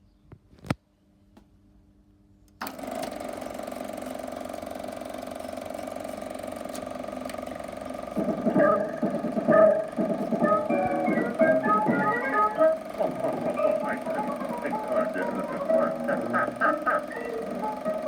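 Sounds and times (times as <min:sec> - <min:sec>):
film projector whirring: 0:02.6 - 0:18.0
music: 0:08.2 - 0:18.0.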